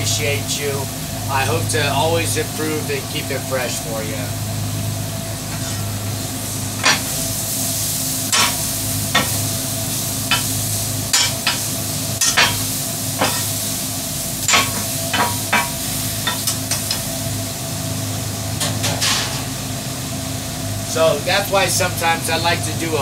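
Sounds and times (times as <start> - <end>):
low mechanical hum: 0.0 - 23.0
food sizzling on a griddle: 5.4 - 19.8
metal spatula scraping griddle: 5.5 - 7.2, 18.8 - 19.5.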